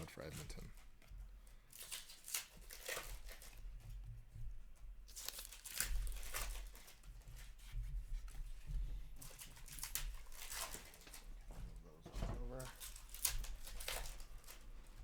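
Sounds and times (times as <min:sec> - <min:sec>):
card packs crinkling and tearing: 0:01.7 - 0:03.6, 0:05.1 - 0:07.0, 0:09.2 - 0:11.2, 0:12.5 - 0:14.7.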